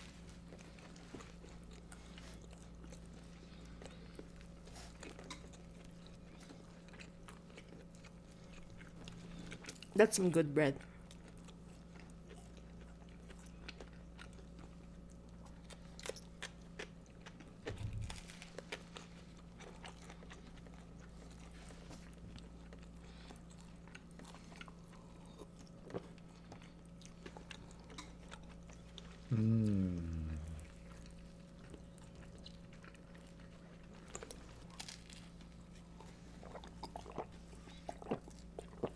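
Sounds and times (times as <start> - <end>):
soft crunchy chewing: 0.0 - 38.9
steady low hum: 10.7 - 38.9.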